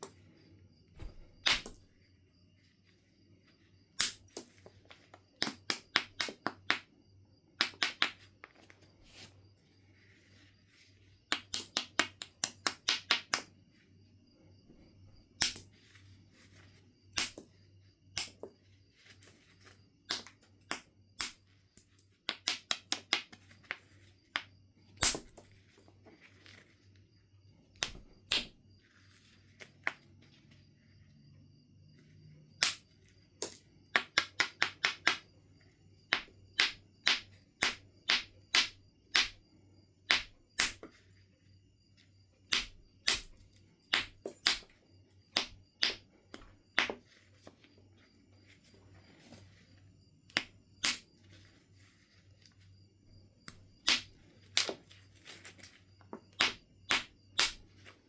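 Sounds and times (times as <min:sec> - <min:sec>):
knapping tools clicking on flint: 0:36.1 - 0:39.4.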